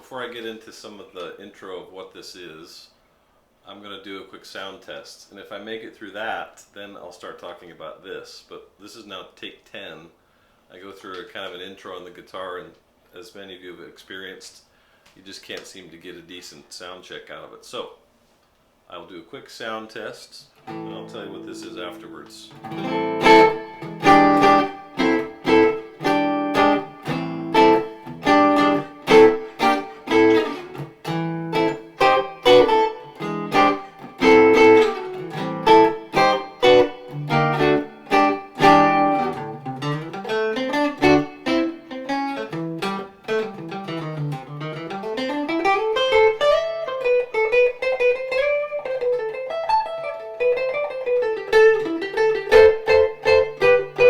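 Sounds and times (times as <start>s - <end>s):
guitar single-note melody: 20.6s - 54.0s
guitar strummed chords: 20.6s - 54.0s.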